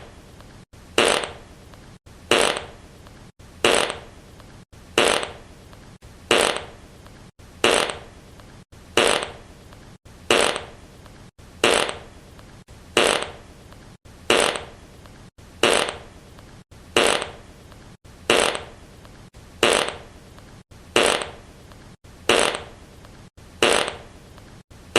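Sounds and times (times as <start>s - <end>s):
fart sound effect: 1.0s - 1.4s, 2.3s - 2.7s, 3.6s - 4.1s, 4.9s - 5.4s, 6.2s - 6.8s, 7.6s - 8.1s, 8.9s - 9.4s, 10.3s - 10.7s, 11.6s - 12.1s, 12.9s - 13.4s, 14.2s - 14.7s, 15.6s - 16.1s, 16.9s - 17.4s, 18.2s - 18.7s, 19.6s - 20.1s, 20.9s - 21.4s, 22.2s - 22.7s, 23.6s - 24.0s.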